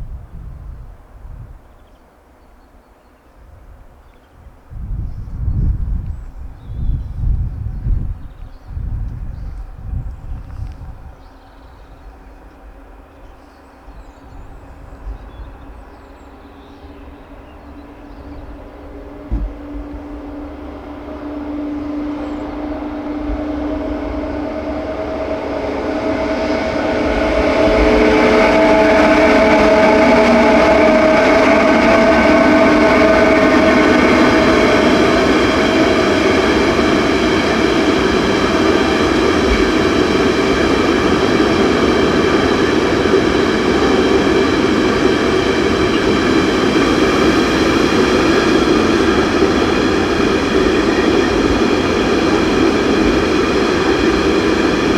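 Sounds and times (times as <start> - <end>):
train passing: 3.5 - 54.9
locomotive cooling blower whine: 17.8 - 54.9.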